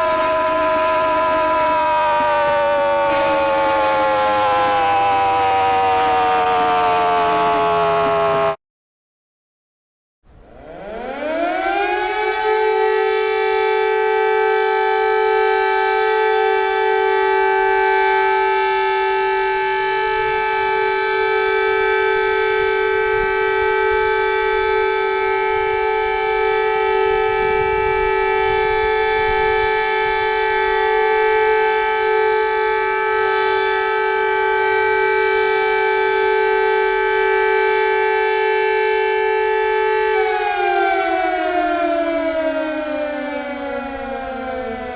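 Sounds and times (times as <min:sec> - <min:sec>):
civil defence siren: 0:00.0 - 0:08.6, 0:10.2 - 0:44.9.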